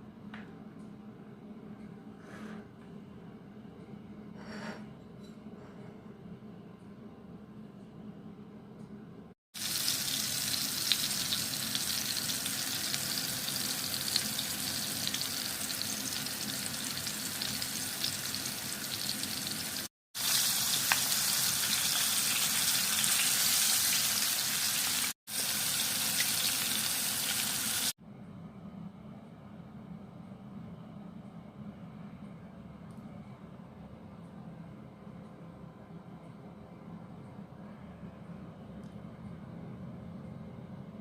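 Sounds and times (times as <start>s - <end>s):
fish frying in hot oil: 9.6s - 27.9s.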